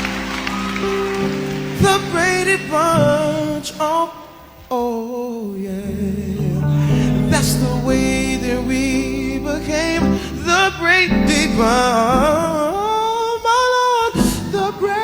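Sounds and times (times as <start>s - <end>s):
man singing: 1.8s - 15.0s
low bass: 5.9s - 12.8s
soft instrumental backing: 5.9s - 13.0s.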